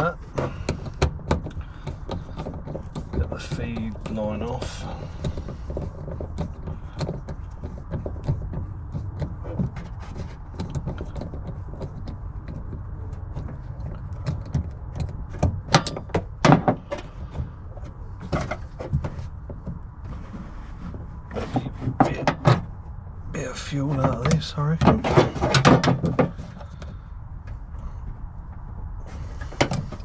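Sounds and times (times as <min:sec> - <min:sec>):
hand tools knocking on metal: 0:00.0 - 0:19.9.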